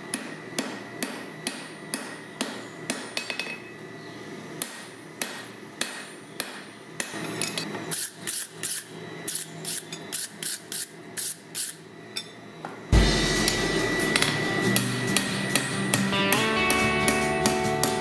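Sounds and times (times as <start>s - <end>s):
hammer striking steel anvil: 0.0s - 3.7s, 4.6s - 7.7s, 13.0s - 18.0s
loud guitar music: 13.0s - 18.0s.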